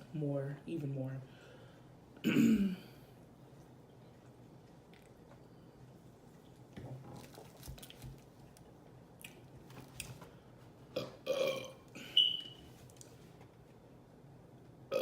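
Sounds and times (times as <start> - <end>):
woman burping: 2.2 - 3.0, 11.0 - 12.1.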